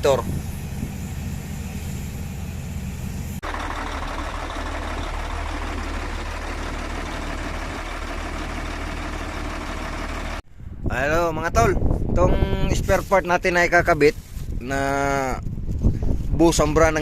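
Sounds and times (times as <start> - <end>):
truck diesel engine idling: 0.0 - 10.4.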